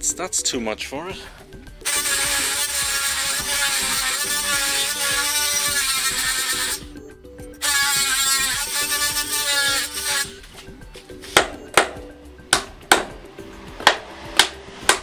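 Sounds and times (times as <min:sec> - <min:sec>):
power saw straining to cut: 0:01.9 - 0:06.9, 0:07.6 - 0:10.3.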